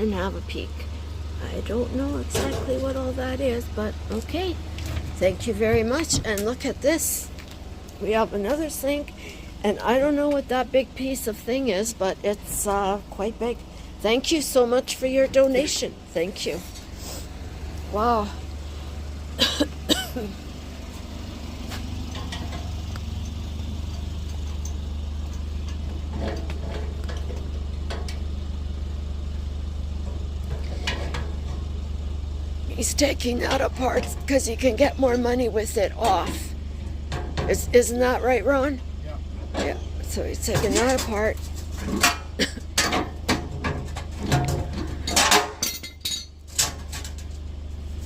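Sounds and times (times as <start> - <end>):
vehicle engine idling: 0.0 - 48.0
scrap metal clinks and knocks: 40.4 - 47.3.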